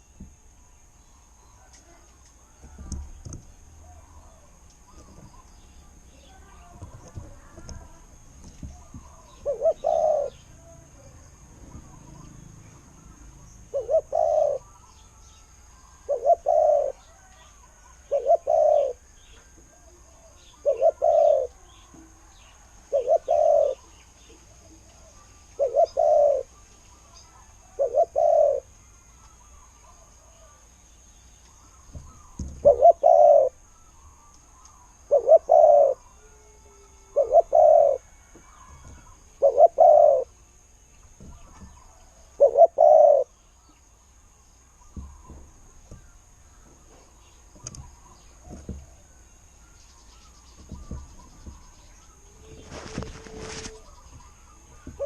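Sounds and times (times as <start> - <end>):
dove cooing: 6.2 - 11.0, 13.0 - 14.8, 16.0 - 17.3, 17.9 - 23.9, 24.5 - 26.6, 27.3 - 28.7, 31.7 - 33.6, 34.7 - 40.4, 41.2 - 43.4, 50.6 - 55.0.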